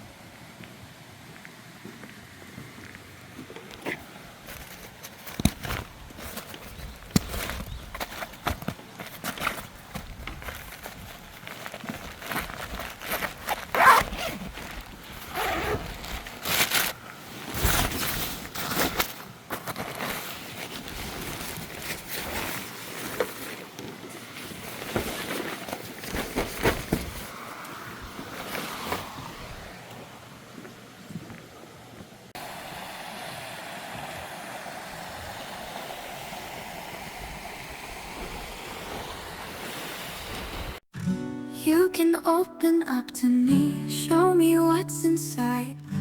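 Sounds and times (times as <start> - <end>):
rustling and scraping of handling: 2.4 - 29.7.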